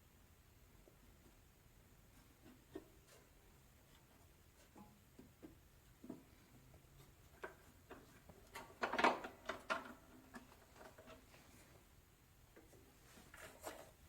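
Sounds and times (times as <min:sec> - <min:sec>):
handling knocks and clicks: 0:03.9 - 0:11.3.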